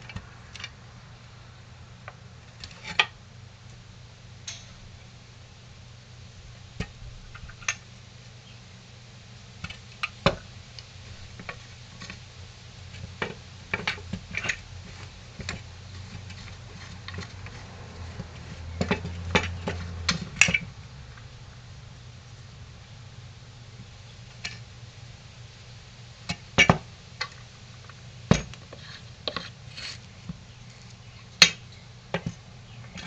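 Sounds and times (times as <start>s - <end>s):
hand tools clicking on metal: 4.4s - 4.8s.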